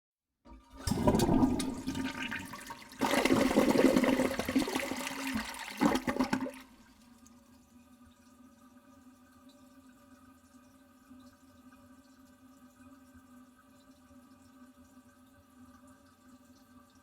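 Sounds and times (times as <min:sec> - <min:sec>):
toilet flushing: 0:00.5 - 0:07.4.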